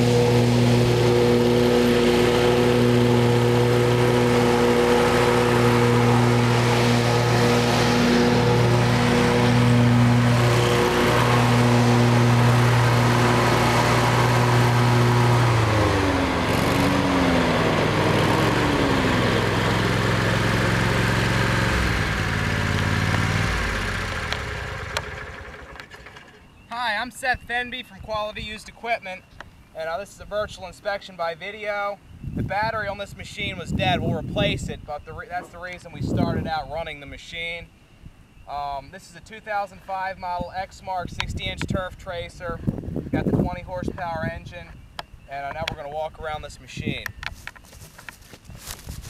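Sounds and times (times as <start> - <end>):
lawn mower engine running: 0.0 - 26.7.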